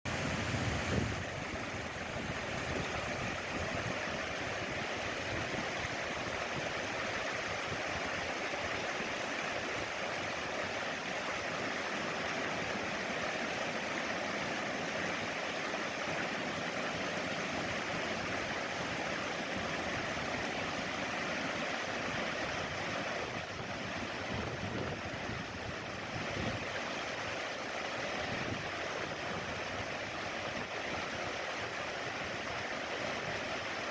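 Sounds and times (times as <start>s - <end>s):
stream flowing: 0.1s - 33.9s.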